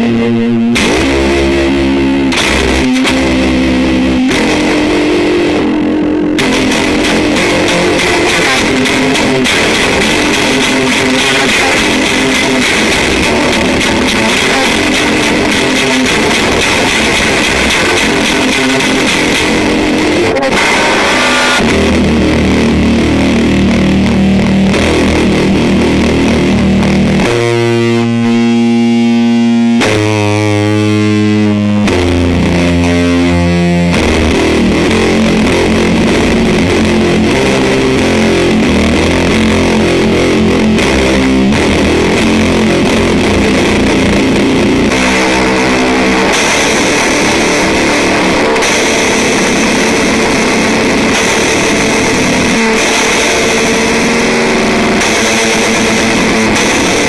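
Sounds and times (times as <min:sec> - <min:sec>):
distorted electric guitar: 0:00.0 - 0:57.0.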